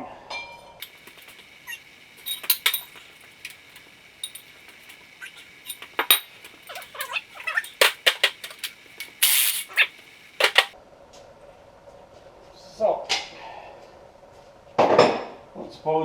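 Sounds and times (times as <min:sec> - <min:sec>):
metal tools clinking: 0:00.8 - 0:10.8
sharp clicks: 0:00.8 - 0:10.8.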